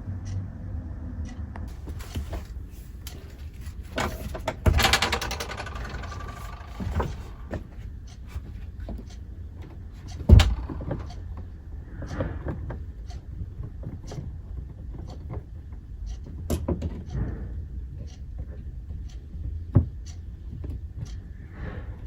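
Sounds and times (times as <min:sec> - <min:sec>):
wire scraping through wall: 0:01.7 - 0:08.5.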